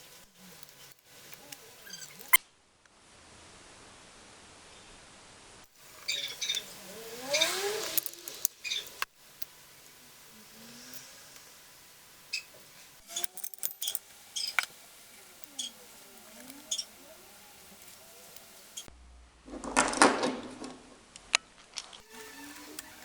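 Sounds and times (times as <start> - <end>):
metal tools clinking: 7.3 - 8.5, 13.0 - 14.7.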